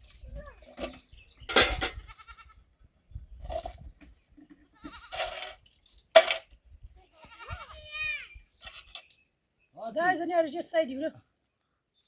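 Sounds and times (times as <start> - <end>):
goats bleating: 2.0 - 2.6, 7.2 - 8.3.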